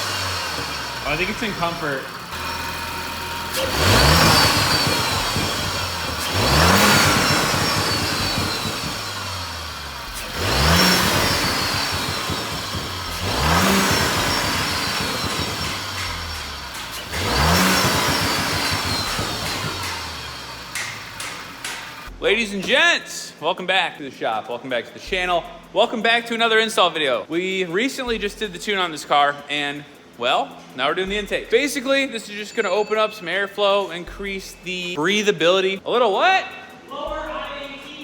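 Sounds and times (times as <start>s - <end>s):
car engine revving: 0.0s - 22.2s.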